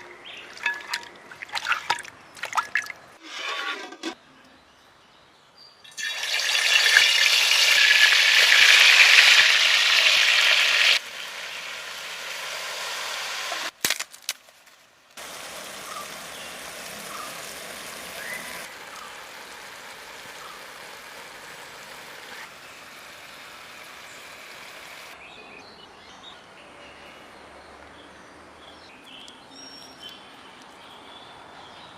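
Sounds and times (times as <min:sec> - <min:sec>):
chicken sizzling in a pan: 0:06.0 - 0:13.7, 0:15.2 - 0:25.2.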